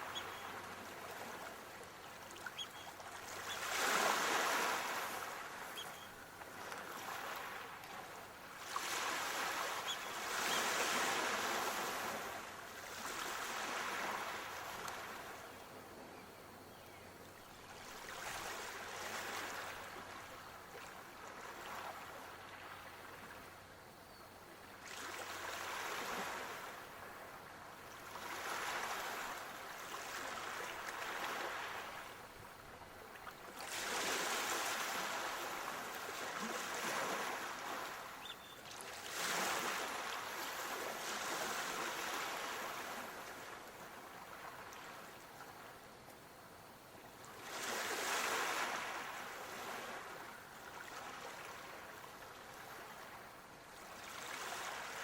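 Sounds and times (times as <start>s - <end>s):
waves washing in: 0.0s - 15.4s, 24.8s - 38.2s, 38.8s - 45.0s, 47.3s - 55.0s.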